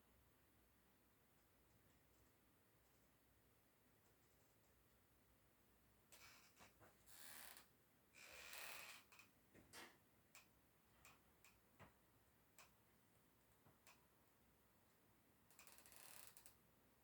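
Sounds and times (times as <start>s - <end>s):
faint clicks: 12.6s - 12.8s.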